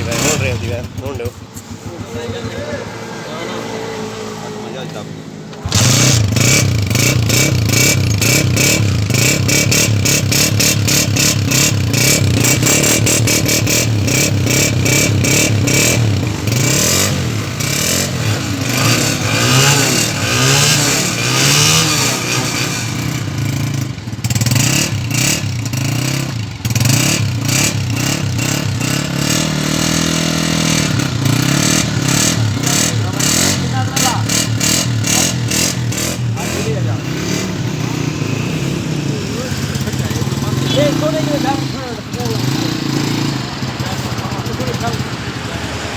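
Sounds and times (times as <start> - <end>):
motorcycle engine revving: 0.0 - 45.9.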